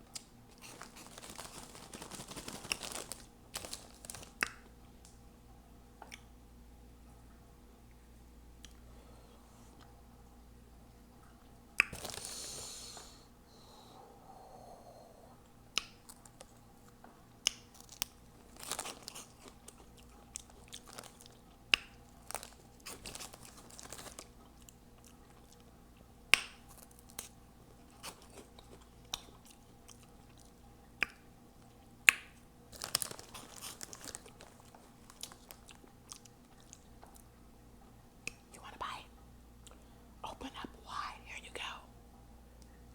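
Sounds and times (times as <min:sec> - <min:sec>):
chewing and crunching: 0:00.0 - 0:04.7, 0:15.8 - 0:37.3.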